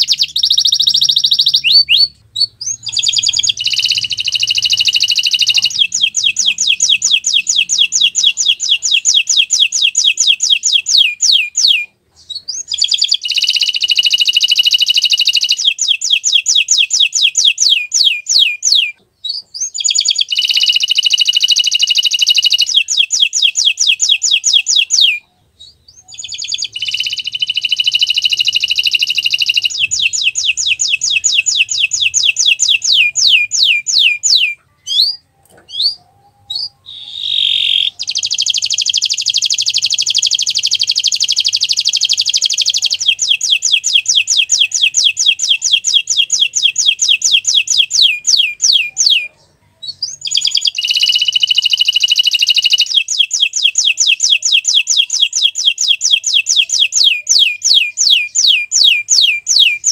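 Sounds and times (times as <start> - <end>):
canary singing trills: 0.0 - 59.9.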